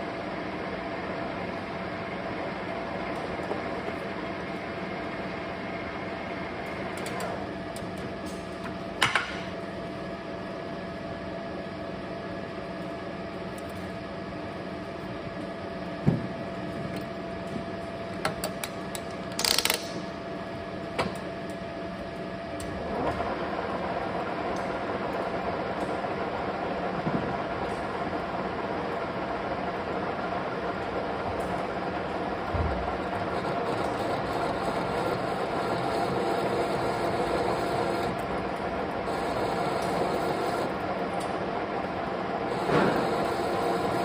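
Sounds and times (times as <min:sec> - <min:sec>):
metal lathe humming: 0:33.2 - 0:40.8, 0:42.5 - 0:44.0.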